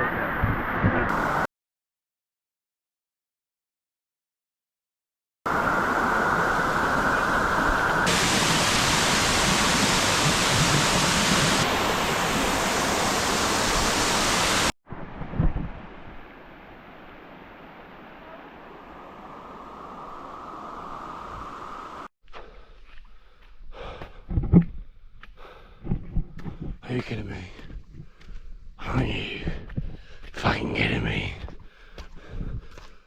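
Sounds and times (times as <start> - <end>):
quieter steady water rush: 0.2 - 1.5, 5.5 - 14.7, 15.7 - 22.1
waterfall rushing: 5.5 - 14.8.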